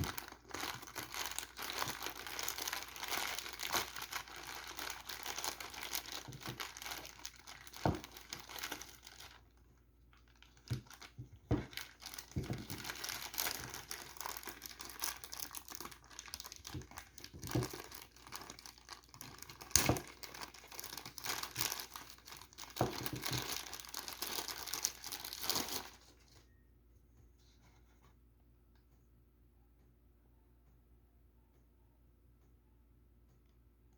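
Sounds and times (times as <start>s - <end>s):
packaging crinkling and tearing: 0.0s - 26.4s.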